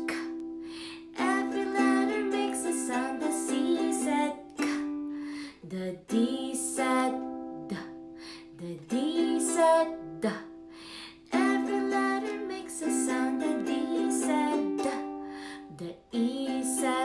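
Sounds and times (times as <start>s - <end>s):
strummed string accompaniment: 0.0s - 5.4s, 8.9s - 15.7s
woman singing: 0.0s - 17.0s.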